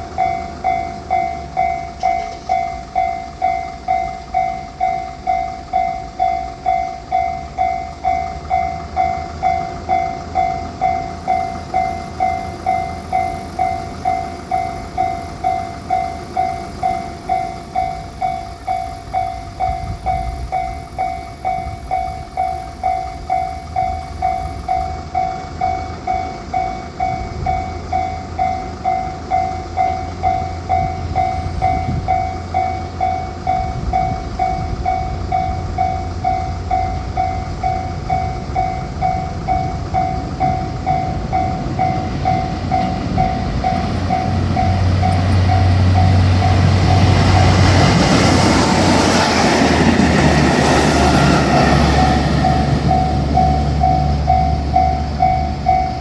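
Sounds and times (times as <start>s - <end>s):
railroad crossing bell ringing: 0.0s - 56.0s
train rumbling: 0.0s - 56.0s.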